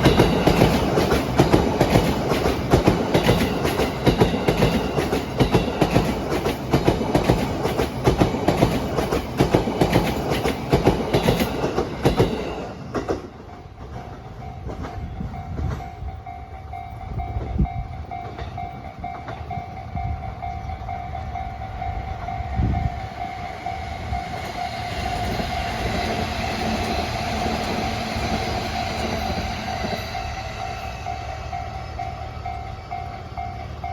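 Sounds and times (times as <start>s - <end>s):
train cars clacking over rail joints: 0.0s - 33.9s
level crossing warning bell: 9.9s - 33.9s.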